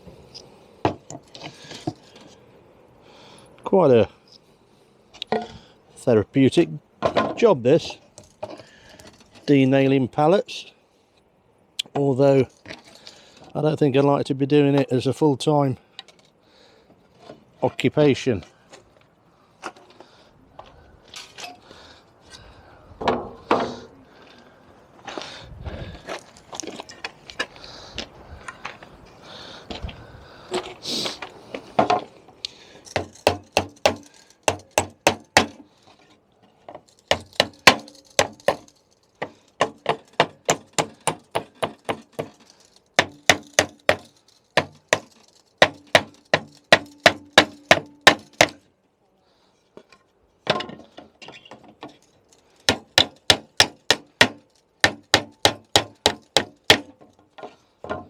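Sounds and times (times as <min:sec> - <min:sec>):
wood being handled: 0:00.8 - 0:02.4, 0:30.5 - 0:48.6, 0:49.7 - 0:58.0.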